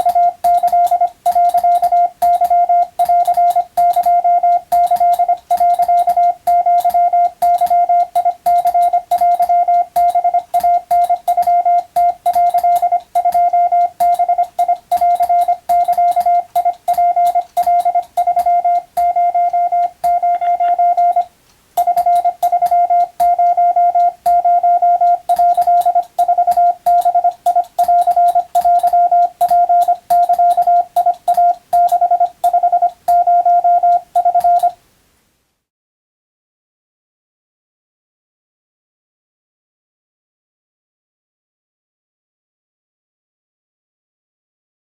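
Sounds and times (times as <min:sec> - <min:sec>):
faint keying clicks: 0:00.0 - 0:34.8
morse code beeps: 0:00.0 - 0:34.8.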